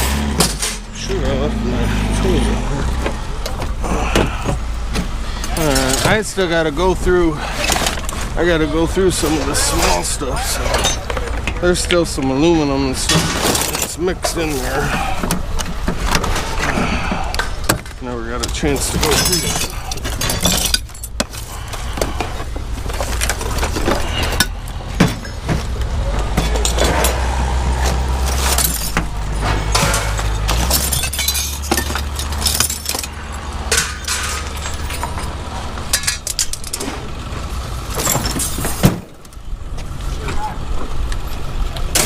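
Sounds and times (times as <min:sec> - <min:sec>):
engine running low: 0:00.0 - 0:42.0
scrap metal clanking onto pile: 0:13.0 - 0:22.3, 0:22.9 - 0:37.2, 0:37.9 - 0:39.1.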